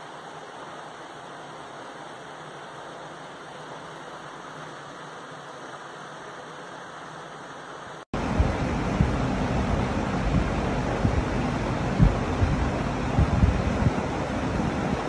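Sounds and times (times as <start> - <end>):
drum fan running: 8.1 - 15.0
airstream buffeting microphone: 8.2 - 15.0.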